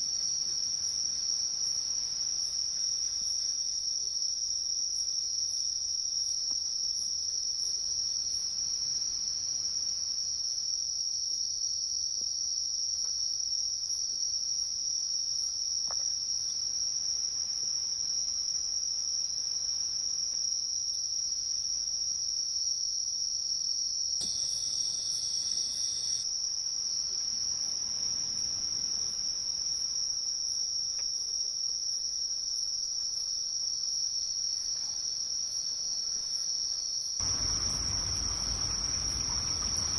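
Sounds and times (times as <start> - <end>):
insect trill: 0.0 - 39.9
higher insect call: 24.2 - 31.4, 34.0 - 39.9.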